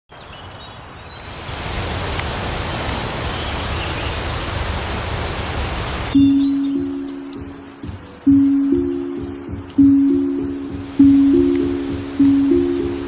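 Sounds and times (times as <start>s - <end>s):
faint bird chirps: 6.2s - 7.6s.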